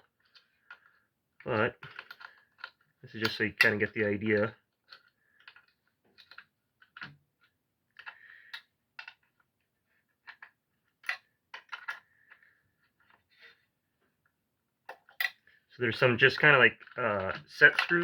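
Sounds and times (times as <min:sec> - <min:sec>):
metal tool clicks and clinks: 0:17.5 - 0:18.0.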